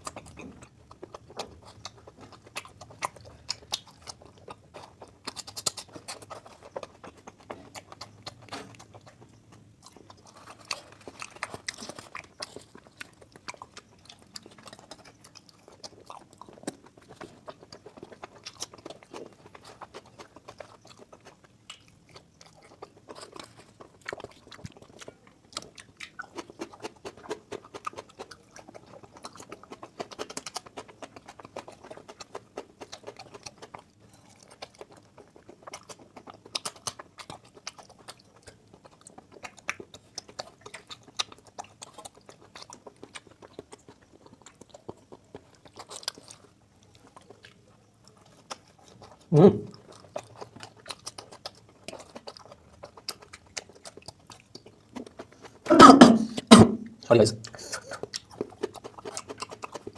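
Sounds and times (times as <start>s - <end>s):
crunchy bites: 0.0s - 59.9s
person chewing food: 0.0s - 59.9s
mouth clicks and smacks: 48.2s - 59.9s.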